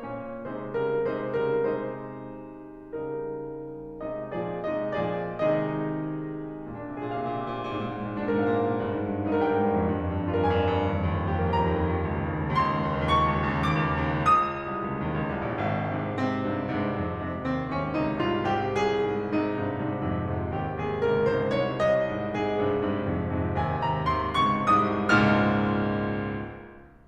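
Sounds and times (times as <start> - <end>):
classical piano music: 0.0 - 27.0.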